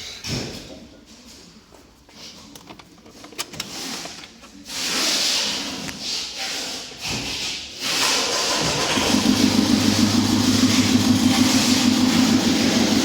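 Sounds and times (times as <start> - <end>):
diesel engine starting and idling: 7.8 - 13.0.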